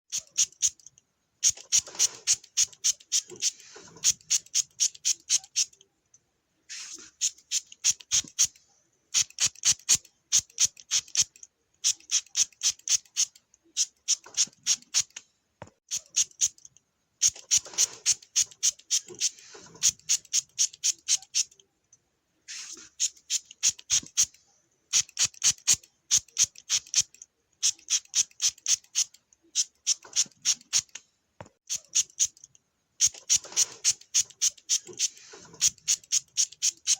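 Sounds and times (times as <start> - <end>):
spray bottle hissing sprays: 1.4 - 5.7, 6.7 - 8.6, 17.2 - 21.5, 22.5 - 24.3, 24.9 - 31.0, 33.0 - 36.9.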